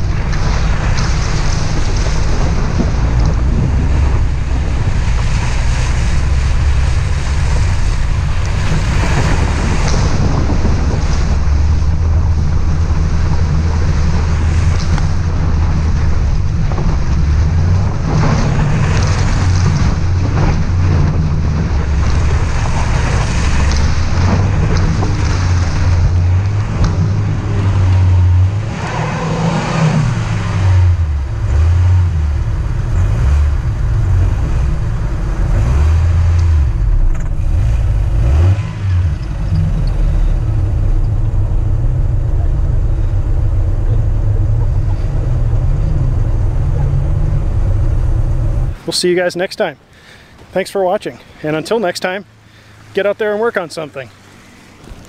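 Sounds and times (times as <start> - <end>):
car engine under load: 0.0 - 55.0
rushing wind: 0.0 - 55.0
tyre noise on dirt: 33.0 - 55.0.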